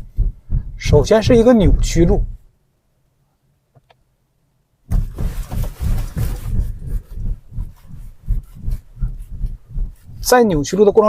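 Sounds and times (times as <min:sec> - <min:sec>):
suspension thumps: 0:00.0 - 0:02.5, 0:04.9 - 0:11.0.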